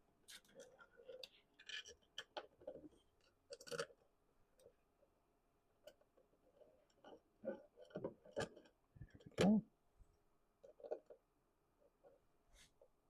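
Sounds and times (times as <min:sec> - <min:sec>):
small parts clicking and knocking: 0:00.2 - 0:04.8, 0:05.7 - 0:09.6, 0:10.6 - 0:12.2.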